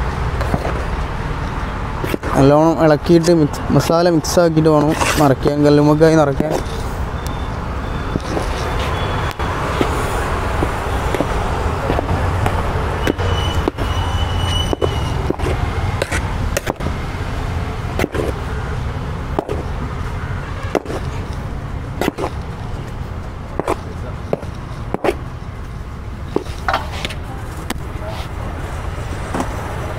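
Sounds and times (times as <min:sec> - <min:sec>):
street and traffic rumble: 0:00.0 - 0:29.9
utensils knocking and clicking: 0:14.6 - 0:16.9, 0:18.0 - 0:18.4, 0:19.4 - 0:19.8.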